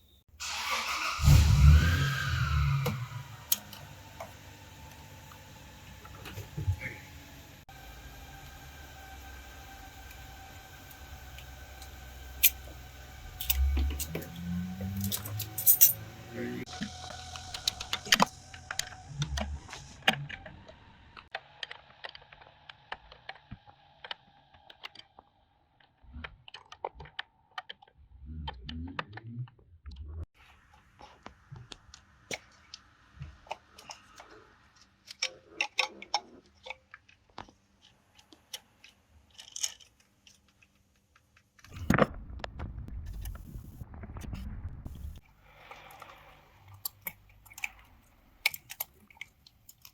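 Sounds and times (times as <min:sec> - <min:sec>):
hand tools clicking and clinking: 0:13.4 - 0:16.1.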